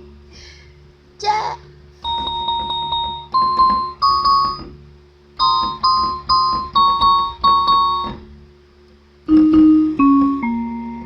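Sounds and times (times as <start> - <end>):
electronic keyboard tremolo notes: 2.0 - 4.8, 5.4 - 8.4, 9.3 - 11.0.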